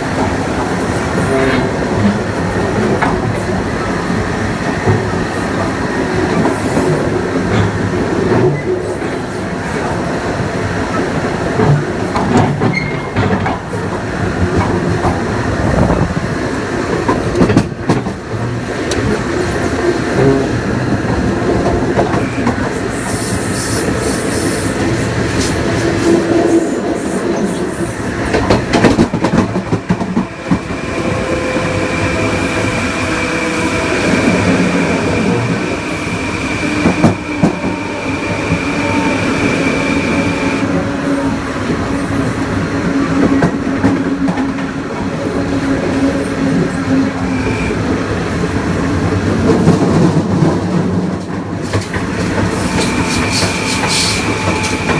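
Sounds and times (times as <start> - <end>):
wheels clacking over rail joints: 11.2 - 16.2, 24.8 - 31.8.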